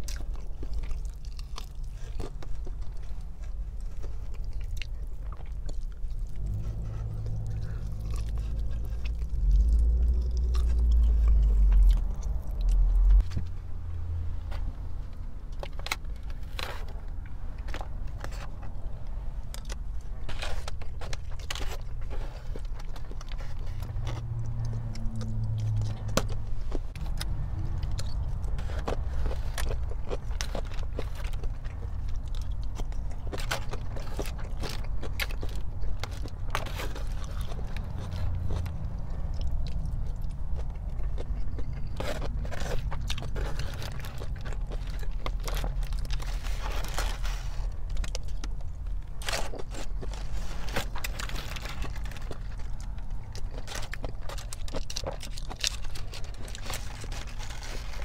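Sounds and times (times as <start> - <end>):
chewing with crisp crunches: 0.0 - 58.0.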